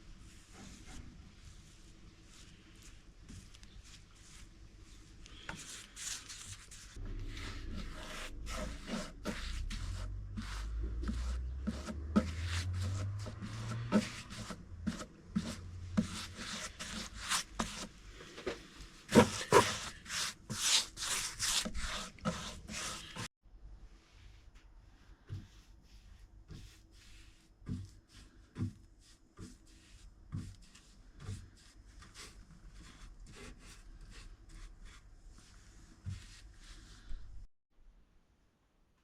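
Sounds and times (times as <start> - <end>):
scraping strokes on wood: 5.3 - 23.3.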